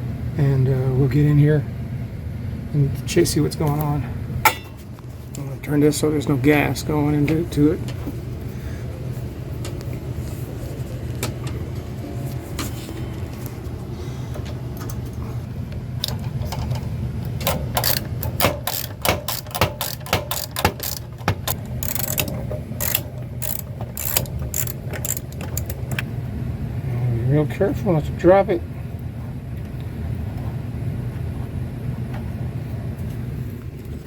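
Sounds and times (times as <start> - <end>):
steady low hum: 0.0 - 34.0
metal tool clicks and clinks: 17.4 - 25.8.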